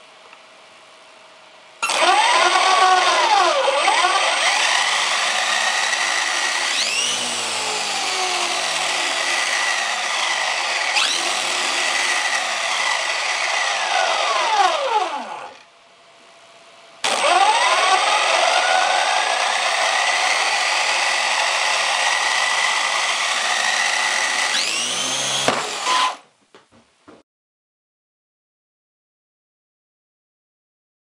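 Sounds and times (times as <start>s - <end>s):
electric motor whine: 1.8s - 15.6s, 17.0s - 26.2s.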